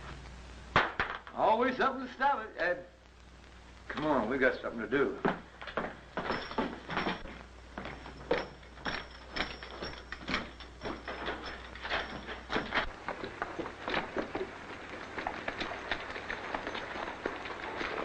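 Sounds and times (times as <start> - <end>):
knocks and clatter: 5.2 - 18.0.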